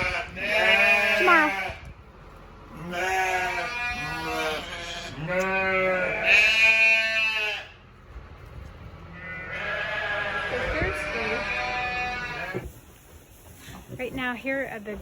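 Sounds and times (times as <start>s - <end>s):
lambs bleating: 0.0s - 1.9s, 2.7s - 7.8s, 9.2s - 12.7s.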